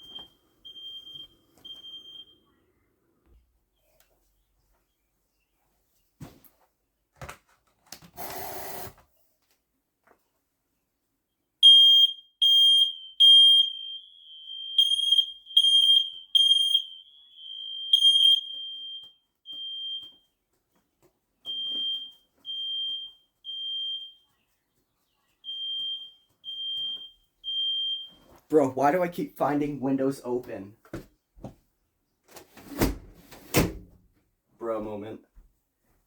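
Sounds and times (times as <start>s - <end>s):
smoke alarm beeping: 0.0s - 2.6s, 11.6s - 20.3s, 21.4s - 24.3s, 25.4s - 28.3s
faint distant alarm beeps: 0.0s - 2.9s, 11.6s - 20.3s, 21.5s - 24.3s, 25.4s - 28.3s.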